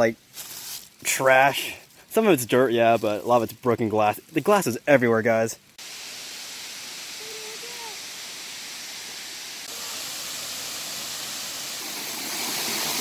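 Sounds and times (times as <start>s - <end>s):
stream water rushing: 5.8s - 13.0s.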